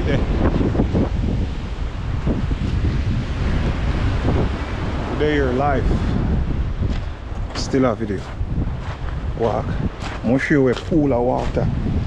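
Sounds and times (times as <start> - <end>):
wind on microphone: 0.0 - 12.0.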